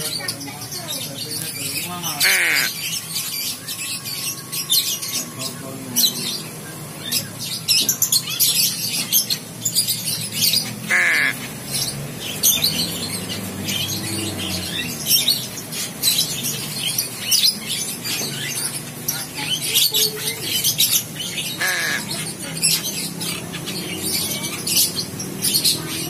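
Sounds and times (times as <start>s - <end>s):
birds chirping: 0.0s - 26.0s
bird squawk: 2.0s - 3.2s, 10.4s - 12.9s, 19.3s - 23.4s.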